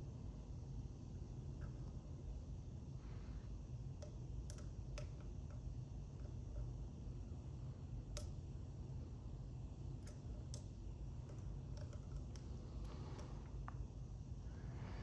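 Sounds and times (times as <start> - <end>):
steady low hum: 0.0 - 15.0
lock pick metallic clicks: 4.0 - 5.6.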